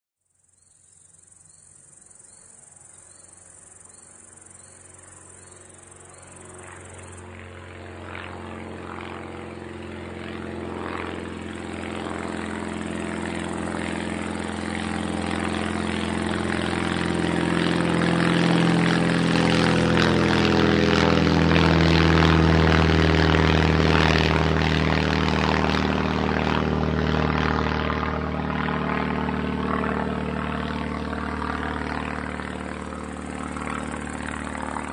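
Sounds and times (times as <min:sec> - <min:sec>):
propeller plane engine drone: 0:00.2 - 0:34.9
birds chirping: 0:00.4 - 0:07.3
crickets trilling: 0:00.5 - 0:07.3.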